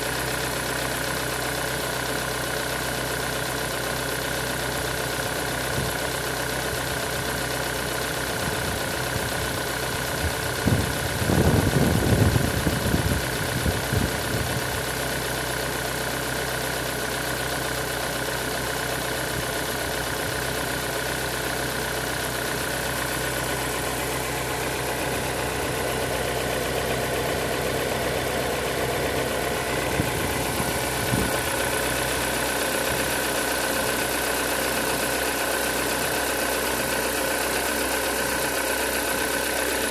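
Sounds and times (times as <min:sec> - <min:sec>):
car engine idling: 0:00.0 - 0:39.9
uneven engine noise: 0:08.2 - 0:15.0, 0:18.6 - 0:39.9.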